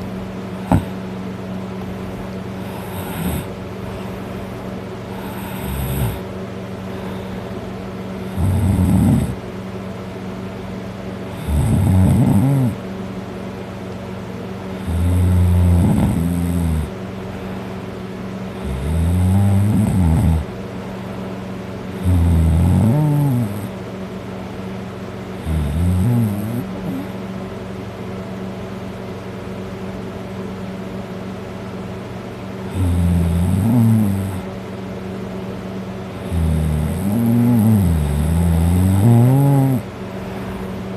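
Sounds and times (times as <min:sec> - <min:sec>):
steady low hum: 0:00.0 - 0:40.9
person snoring loudly: 0:00.6 - 0:01.0, 0:02.6 - 0:03.5, 0:05.1 - 0:06.3, 0:08.2 - 0:09.4, 0:11.3 - 0:12.8, 0:14.8 - 0:16.9, 0:18.6 - 0:20.5, 0:22.0 - 0:23.7, 0:25.4 - 0:27.2, 0:32.7 - 0:34.5, 0:36.2 - 0:39.9.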